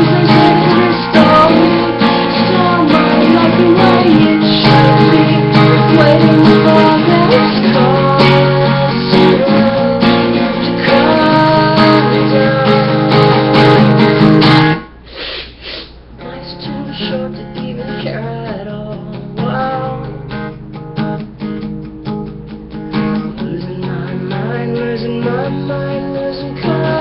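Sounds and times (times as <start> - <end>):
acoustic guitar strumming: 0.0 - 15.0, 16.0 - 27.0.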